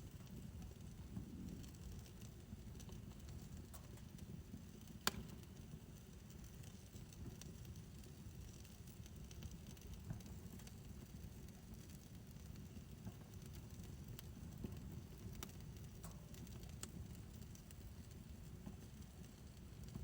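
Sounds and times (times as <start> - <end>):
fire burning low rumble: 0.0 - 20.0
fire crackling: 0.0 - 20.0
sharp pop from fire: 5.0 - 5.4.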